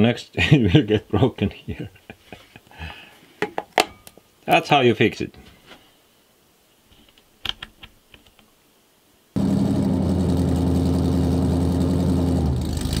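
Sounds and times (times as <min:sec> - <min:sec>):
engine-like drone: 0:09.4 - 0:13.0.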